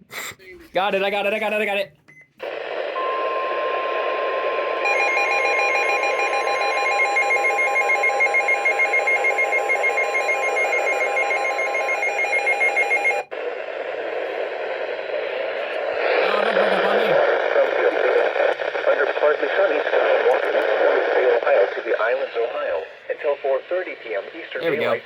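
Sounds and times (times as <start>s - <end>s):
radio static: 2.4s - 6.1s, 13.3s - 25.0s
rapid electronic beeping alarm: 2.4s - 13.3s
steady warning alarm tone: 2.4s - 13.3s.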